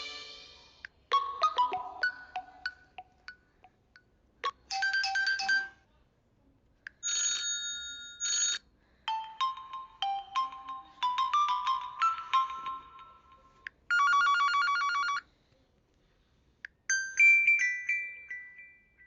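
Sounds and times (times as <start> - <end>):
phone ringtones: 4.4 - 5.8, 9.4 - 15.3.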